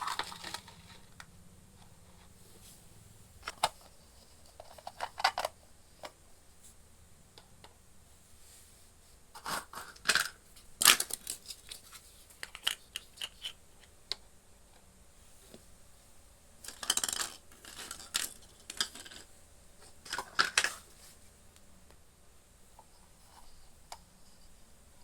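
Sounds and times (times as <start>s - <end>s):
plastic toy pieces clicking: 12.4s - 13.6s, 16.6s - 19.3s.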